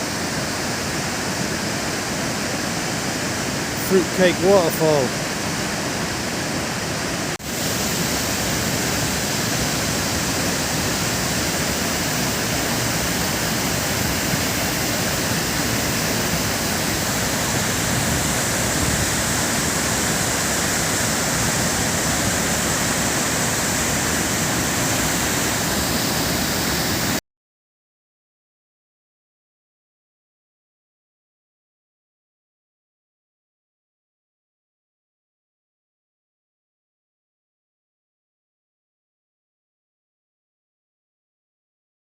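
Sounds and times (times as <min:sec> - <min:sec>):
waterfall rushing: 0:00.1 - 0:27.2.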